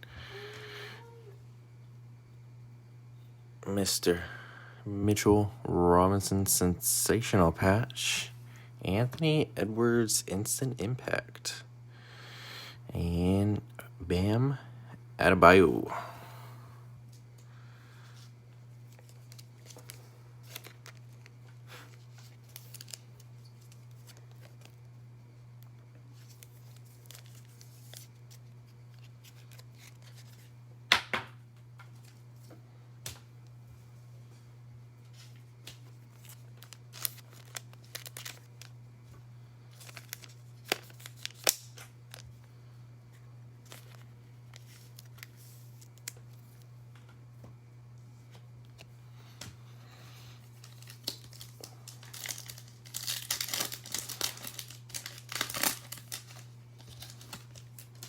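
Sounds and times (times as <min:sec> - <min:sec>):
steady low hum: 0:00.0 - 0:58.0
card wrappers crinkling and snapping: 0:18.2 - 0:24.9, 0:25.6 - 0:30.5, 0:35.1 - 0:38.8, 0:39.7 - 0:42.5, 0:43.6 - 0:46.7, 0:50.1 - 0:58.0.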